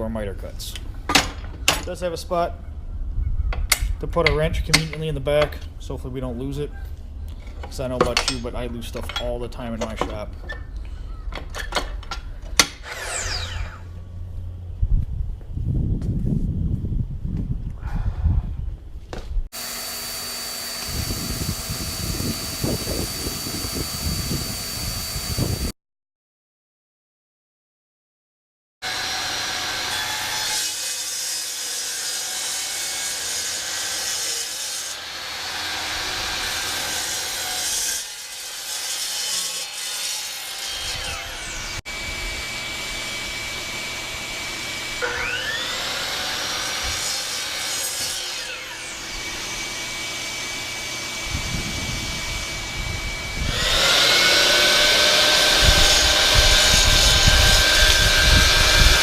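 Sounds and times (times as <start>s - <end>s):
miter saw cutting wood: 12.6s - 14.2s, 19.6s - 25.7s, 28.8s - 59.0s.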